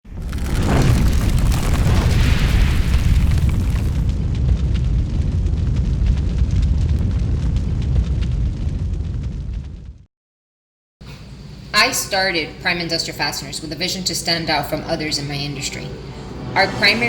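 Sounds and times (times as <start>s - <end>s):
deep rumble with crackling: 0.0s - 10.1s.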